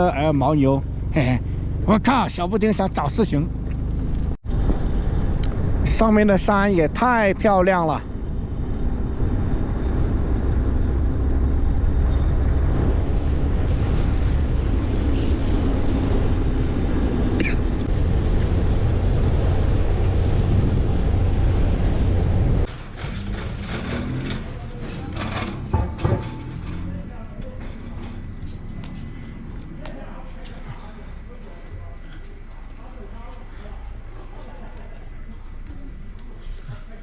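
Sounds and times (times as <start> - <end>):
low rumble of movement: 2.5 - 6.6, 8.0 - 29.9.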